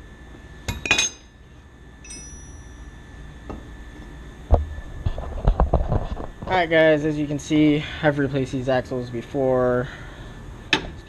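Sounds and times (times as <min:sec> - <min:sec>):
metal piece ringing: 0:00.7 - 0:01.3, 0:02.0 - 0:03.0
metal tools clinking: 0:02.0 - 0:02.7.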